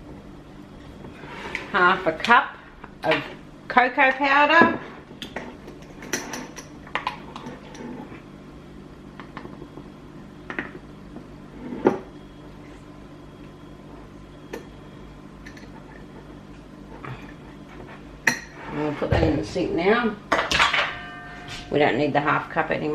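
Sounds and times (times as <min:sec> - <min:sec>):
steady low hum: 0:00.0 - 0:22.9
kitchen utensils knocking: 0:20.3 - 0:22.0.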